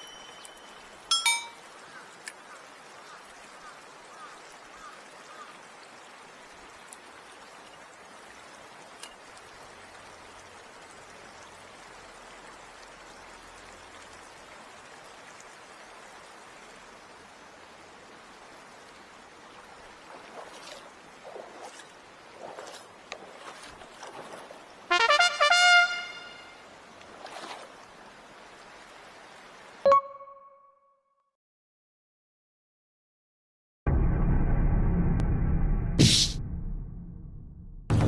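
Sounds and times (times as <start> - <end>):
stream water rushing: 0.0 - 7.4, 8.2 - 29.9.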